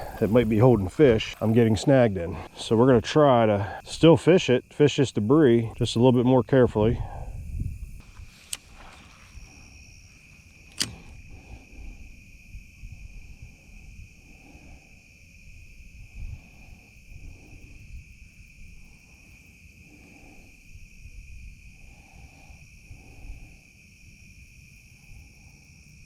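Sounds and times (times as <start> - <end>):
sharp click: 8.1 - 9.1, 10.6 - 11.2.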